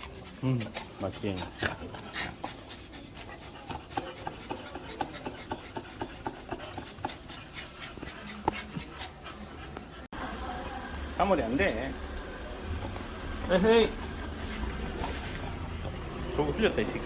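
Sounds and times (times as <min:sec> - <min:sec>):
dog panting: 0:00.0 - 0:17.0.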